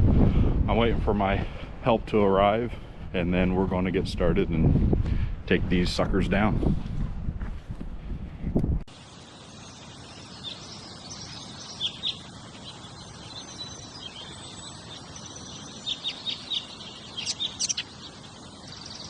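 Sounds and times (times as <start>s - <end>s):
outdoor background noise: 0.0s - 19.0s
birds chirping: 8.9s - 19.0s.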